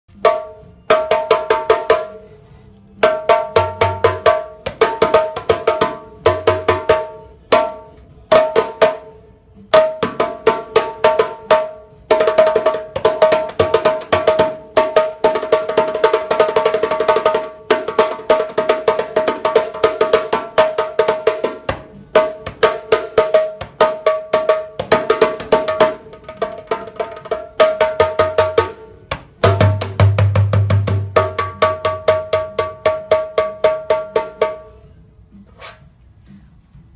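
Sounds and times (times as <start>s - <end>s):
djembe played by hand: 0.1s - 2.4s, 3.0s - 34.8s.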